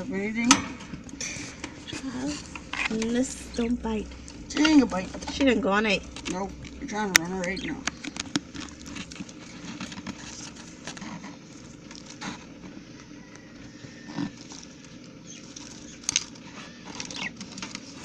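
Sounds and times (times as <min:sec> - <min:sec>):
low steady hum: 0:00.0 - 0:18.0
budgies chirping: 0:13.7 - 0:18.0.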